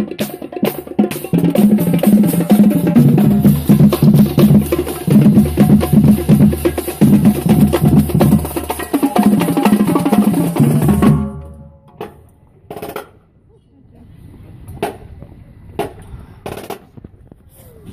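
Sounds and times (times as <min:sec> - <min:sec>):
pitched bass drum tones: 0:00.0 - 0:12.2.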